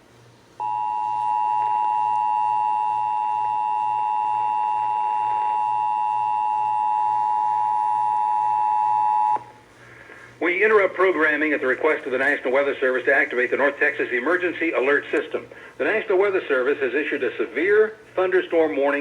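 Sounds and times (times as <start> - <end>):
faint pulsing hum: 0.0 - 19.0.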